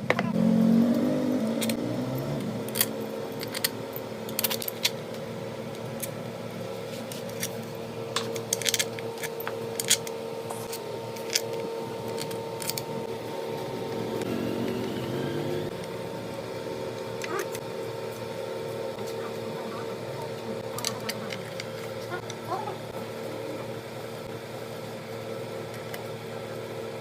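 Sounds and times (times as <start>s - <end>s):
steady hum: 0.0s - 27.0s.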